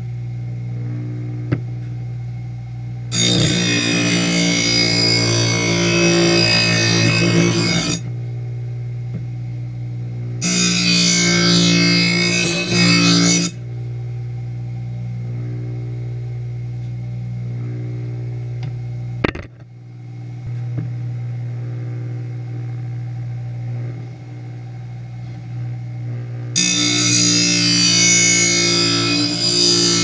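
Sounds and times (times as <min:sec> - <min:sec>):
grinder motor humming: 0:03.1 - 0:08.2, 0:10.4 - 0:13.6, 0:18.6 - 0:19.7, 0:26.1 - 0:30.0.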